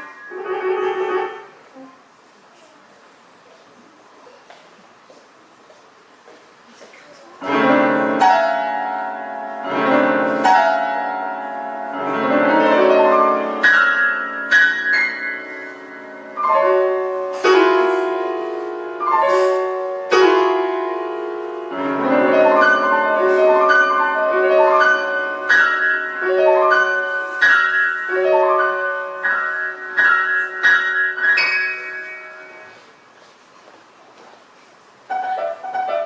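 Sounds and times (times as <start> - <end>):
solo piano playing: 0.0 - 1.6, 7.4 - 32.8, 35.1 - 36.0.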